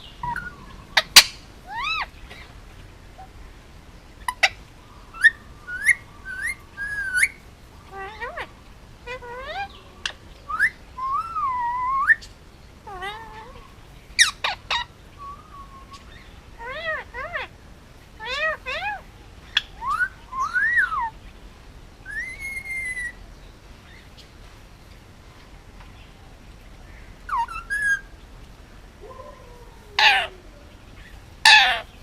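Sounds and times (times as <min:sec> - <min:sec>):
parakeet whistling and chirping: 0:00.1 - 0:02.1, 0:05.2 - 0:07.4, 0:10.5 - 0:12.3, 0:19.6 - 0:21.1, 0:22.1 - 0:23.2.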